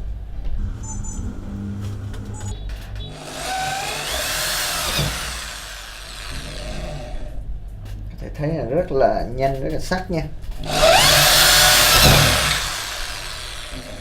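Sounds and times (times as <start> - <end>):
drill bit whining through material: 3.1 - 7.3, 10.6 - 14.0
impact drill motor humming: 3.1 - 7.3, 10.6 - 14.0.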